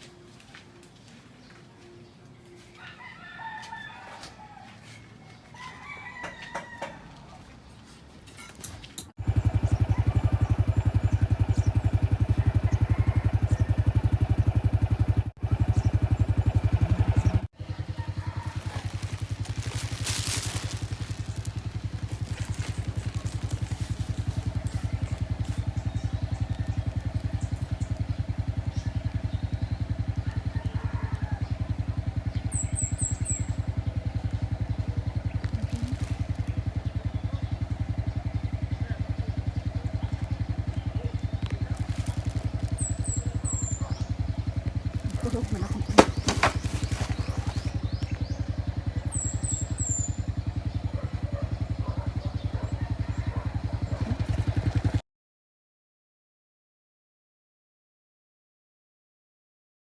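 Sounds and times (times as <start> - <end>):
small engine running: 9.1 - 55.0.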